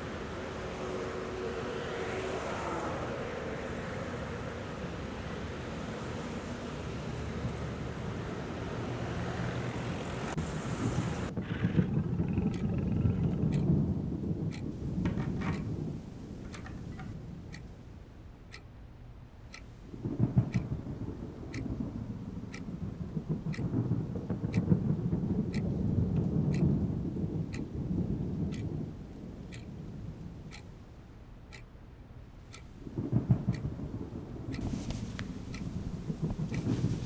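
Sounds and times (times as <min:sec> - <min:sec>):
steady ticking: 0:14.5 - 0:17.2, 0:34.6 - 0:37.0.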